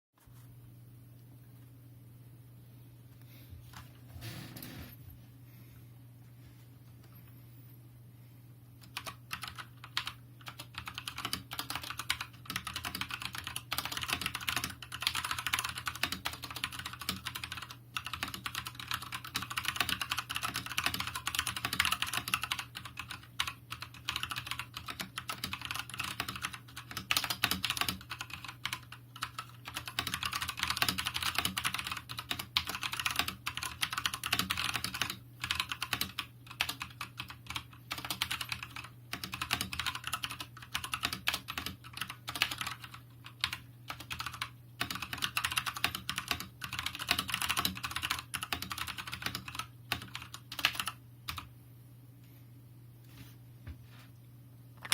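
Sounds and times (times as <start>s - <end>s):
mechanical keyboard typing: 8.8s - 51.5s.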